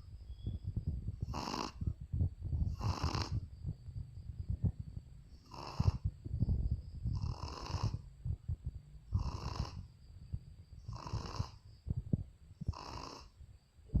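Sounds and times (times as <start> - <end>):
low breathing: 0.0 - 13.4
dog snoring: 1.2 - 1.9, 2.6 - 3.4, 5.4 - 6.1, 7.1 - 8.0, 9.1 - 9.9, 10.8 - 11.6, 12.6 - 13.4.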